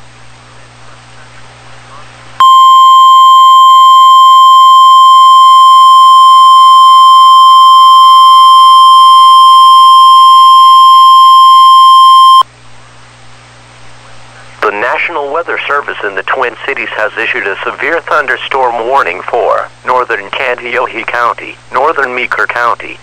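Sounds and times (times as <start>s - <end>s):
faint radio static hiss: 0.0s - 2.6s, 7.3s - 23.0s
high warning alarm beep: 2.4s - 12.4s.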